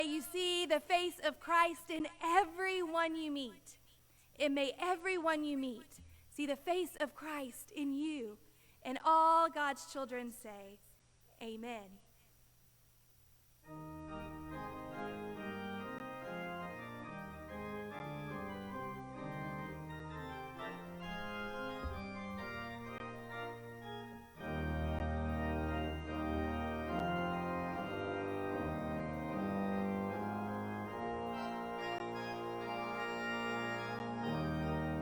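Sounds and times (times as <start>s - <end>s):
church organ chords: 13.7s - 35.0s.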